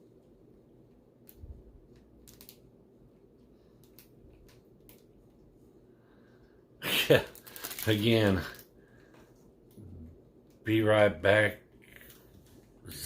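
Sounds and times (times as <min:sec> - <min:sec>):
low room hum: 0:00.0 - 0:13.0
packaging rustling and clicks: 0:02.0 - 0:02.6, 0:07.2 - 0:08.7.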